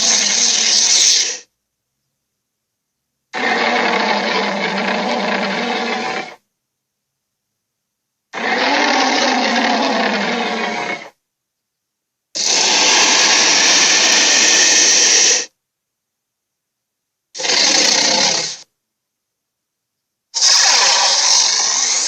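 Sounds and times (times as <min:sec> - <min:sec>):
dinosaur roars: 0:03.4 - 0:06.4, 0:08.4 - 0:11.1, 0:12.4 - 0:15.5, 0:17.4 - 0:18.6, 0:20.4 - 0:22.0.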